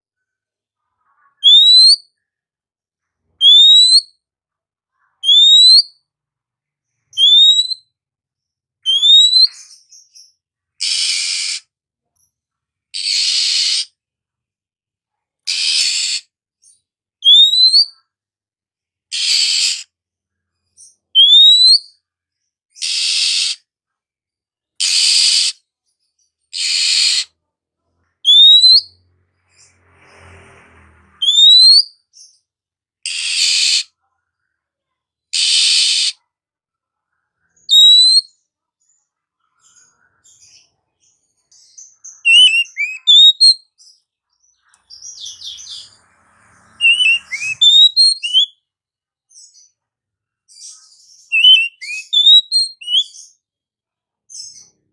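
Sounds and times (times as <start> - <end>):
bird twittering: 1.4 - 2.0, 3.4 - 4.0, 5.2 - 5.9, 7.1 - 7.8, 8.9 - 11.6, 13.0 - 13.9, 17.2 - 18.0, 21.2 - 21.9, 28.2 - 29.0, 31.2 - 32.3, 37.7 - 38.3, 41.6 - 43.6, 44.6 - 48.6, 50.6 - 53.4
bird rising whistles: 7.2 - 7.8, 17.2 - 17.9, 28.3 - 28.9, 31.2 - 31.9, 42.2 - 43.6, 46.8 - 48.5, 51.4 - 53.1
bird rasping calls: 13.0 - 13.9, 42.3 - 43.6, 46.6 - 48.5.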